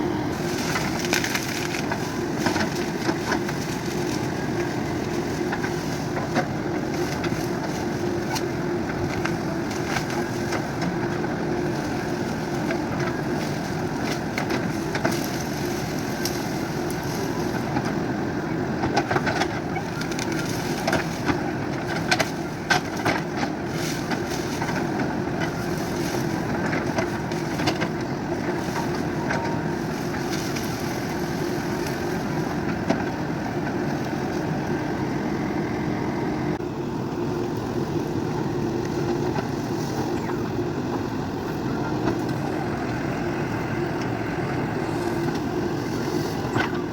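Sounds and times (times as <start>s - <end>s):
diesel engine running: 0.0s - 46.9s.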